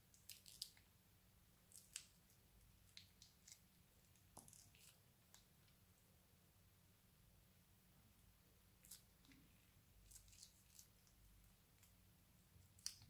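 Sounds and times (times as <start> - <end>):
crunchy slime crackling: 1.6 - 2.2, 2.8 - 5.4.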